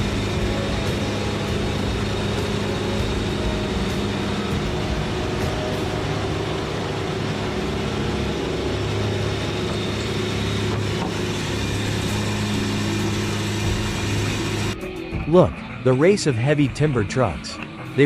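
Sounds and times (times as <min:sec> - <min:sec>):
heavy engine humming: 0:00.0 - 0:15.6.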